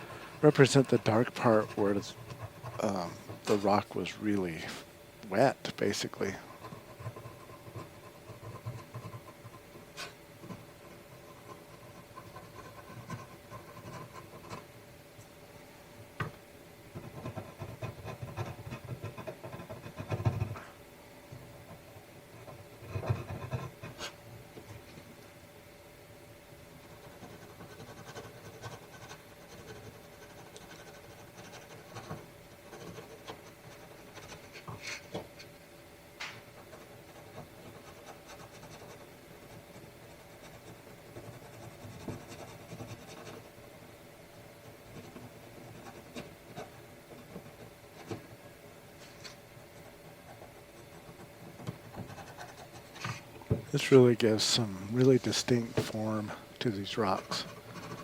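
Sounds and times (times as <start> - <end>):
pencil scratching across paper: 0.0 - 4.8, 5.8 - 14.7, 16.9 - 20.7, 21.6 - 24.2, 26.8 - 35.2, 36.6 - 43.7, 44.6 - 48.4, 49.0 - 58.0
faint steady hum: 0.0 - 58.0
sharp pencil ticks: 27.0 - 32.2.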